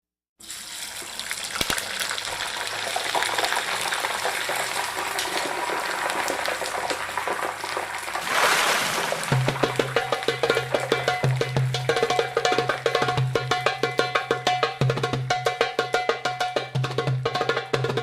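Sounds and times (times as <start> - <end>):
chicken sizzling in hot oil: 0.4 - 8.3.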